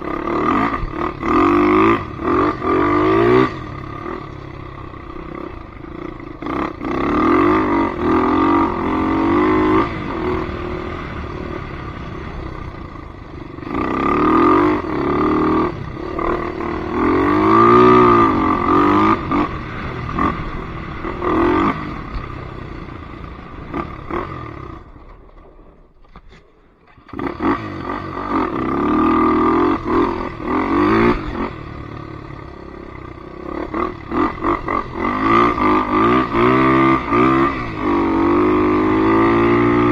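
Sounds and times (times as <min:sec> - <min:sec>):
atv engine revving: 0:00.0 - 0:39.9.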